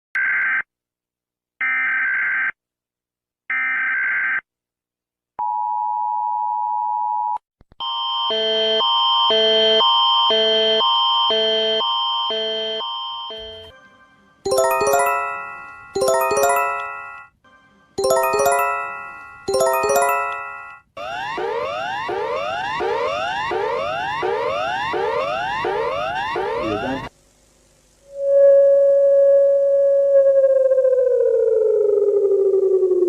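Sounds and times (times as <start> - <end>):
two-tone attention signal: 14.5 - 17.2
bright electronic chime notes: 14.5 - 17.3, 18.0 - 20.8
loud alarm of alternating tones: 18.0 - 27.1.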